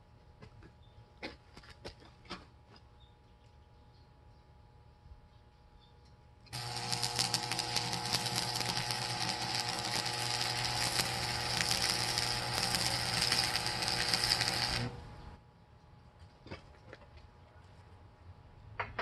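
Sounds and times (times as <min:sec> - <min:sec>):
low hum: 0:04.7 - 0:15.8
welding arc crackling: 0:06.5 - 0:15.4.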